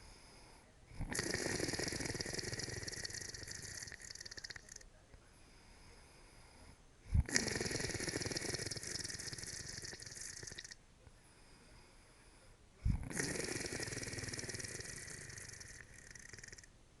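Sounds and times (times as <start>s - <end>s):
person snoring: 0.9s - 4.8s, 7.1s - 10.8s, 12.8s - 16.7s.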